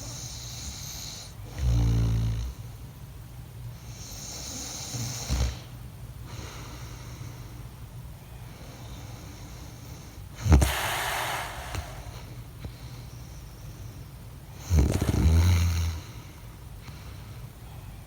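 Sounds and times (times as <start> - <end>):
man snoring: 0.1 - 2.6, 10.4 - 12.4, 14.6 - 16.2
loud snort: 10.4 - 12.4, 14.6 - 16.2.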